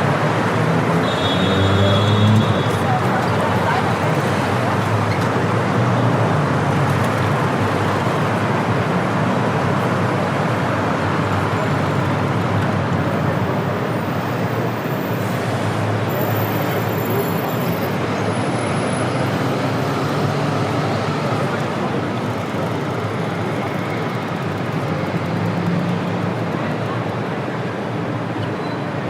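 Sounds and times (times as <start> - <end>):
city street traffic: 0.0 - 29.0.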